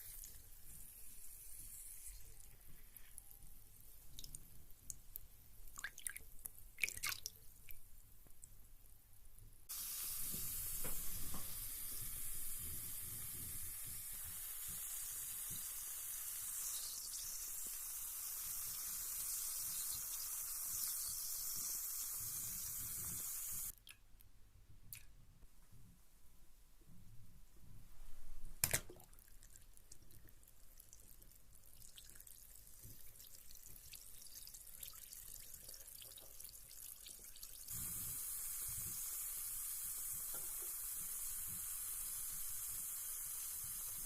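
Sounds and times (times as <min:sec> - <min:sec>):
water drips: 0:04.0 - 0:07.8, 0:28.6 - 0:37.7
bath bomb fizzing in water: 0:09.7 - 0:23.8, 0:36.7 - 0:44.0.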